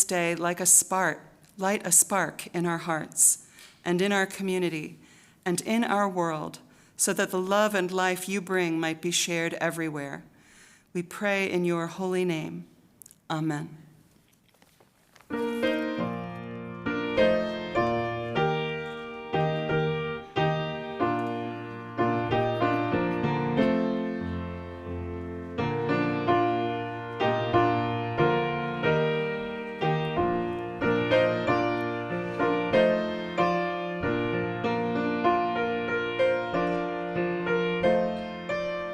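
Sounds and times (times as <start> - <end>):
slow piano chords: 15.3 - 38.9.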